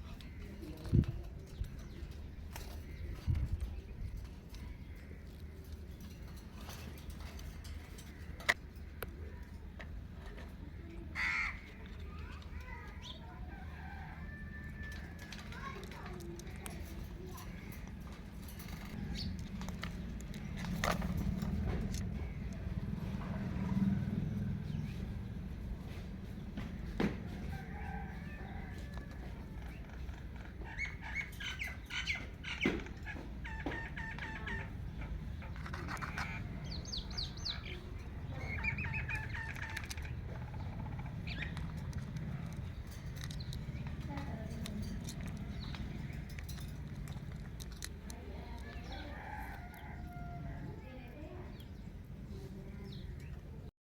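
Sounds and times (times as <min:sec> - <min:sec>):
parakeet squawk: 0:11.2 - 0:11.7, 0:30.4 - 0:35.1, 0:35.8 - 0:36.6
parakeet chirping calls: 0:29.6 - 0:43.9.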